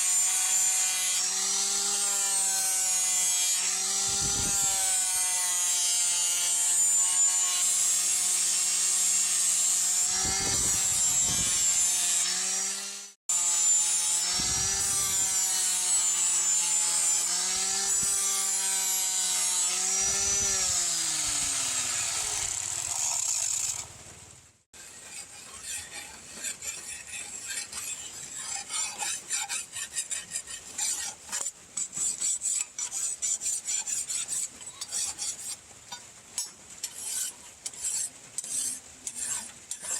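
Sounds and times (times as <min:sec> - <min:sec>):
electric grinder on steel: 0:00.0 - 0:24.0, 0:36.4 - 0:39.9
filing strokes on blade: 0:24.8 - 0:39.9.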